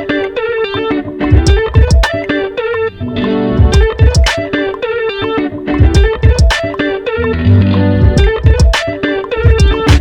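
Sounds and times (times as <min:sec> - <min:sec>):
plucked guitar-like melody: 0:00.0 - 0:10.0
deep kick drums: 0:01.3 - 0:02.0, 0:03.6 - 0:04.3, 0:05.8 - 0:06.5, 0:08.0 - 0:08.8, 0:09.4 - 0:10.0.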